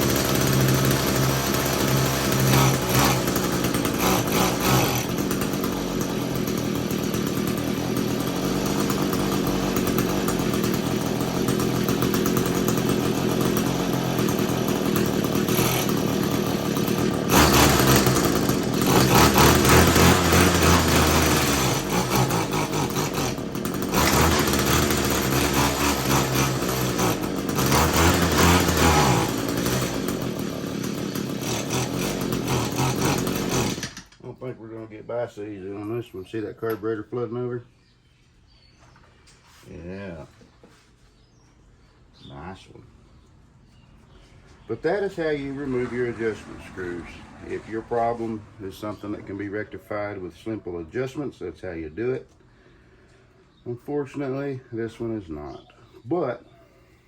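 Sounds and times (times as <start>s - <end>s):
string trimmer engine revving: 0.0s - 34.5s, 44.7s - 50.1s.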